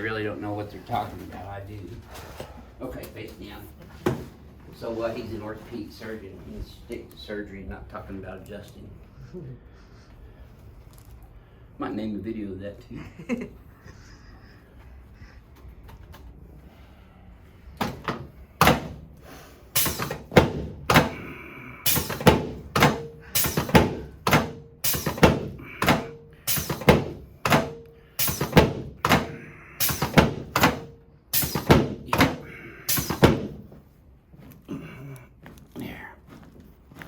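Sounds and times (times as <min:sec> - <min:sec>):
treatment table thuds: 0:17.8 - 0:19.1, 0:19.8 - 0:21.3, 0:21.9 - 0:33.8.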